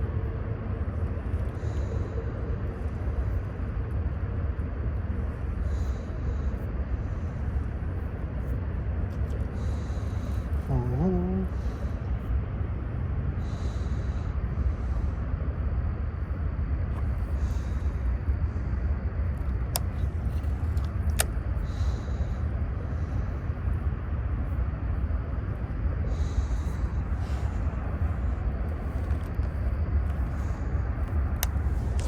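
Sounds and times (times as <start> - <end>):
steady low rumble: 0.0 - 32.0
sharp clicks: 19.4 - 21.4.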